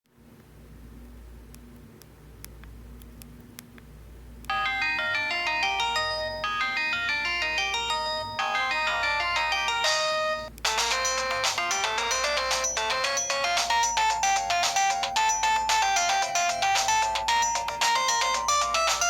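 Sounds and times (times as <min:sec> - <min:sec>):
phone ringtone melody: 0:04.5 - 0:19.0.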